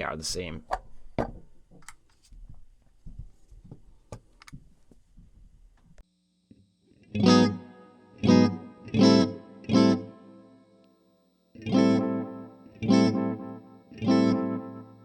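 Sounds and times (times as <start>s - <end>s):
electric guitar chords with delay: 7.1s - 10.8s, 11.6s - 15.0s.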